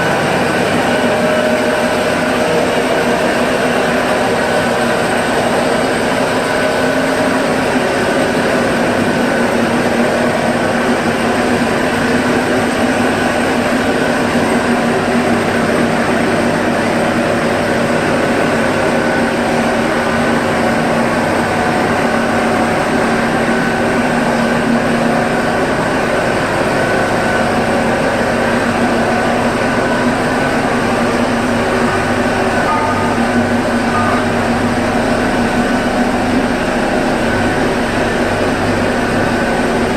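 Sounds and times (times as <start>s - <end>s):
grinding machine running: 0.0s - 39.9s.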